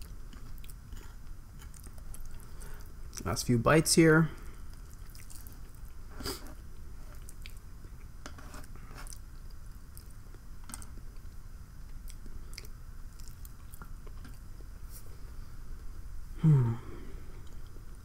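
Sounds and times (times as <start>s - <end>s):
wet mouth chewing sounds: 0.0s - 3.2s, 4.7s - 14.4s
low steady hum: 0.0s - 18.0s.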